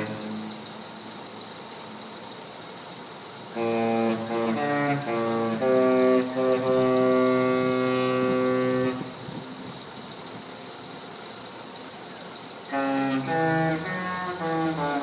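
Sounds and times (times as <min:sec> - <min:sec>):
ship's musical horn playing tune: 0:03.5 - 0:09.4, 0:12.7 - 0:15.0.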